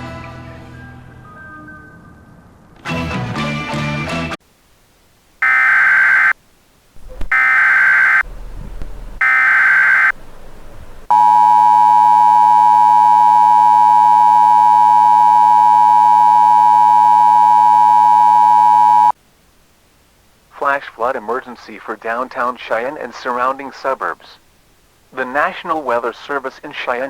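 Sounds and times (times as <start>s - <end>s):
two-tone attention signal: 5.4s - 6.3s, 7.3s - 8.2s, 9.2s - 10.1s, 11.1s - 19.1s
digital data tone bursts: 5.4s - 6.4s, 7.3s - 8.2s, 9.2s - 10.1s.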